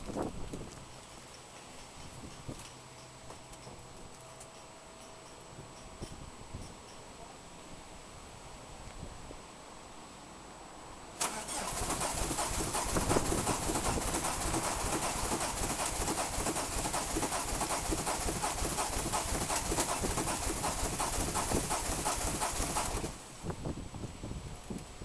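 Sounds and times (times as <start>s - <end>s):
starter motor cranking engine: 11.2s - 23.2s.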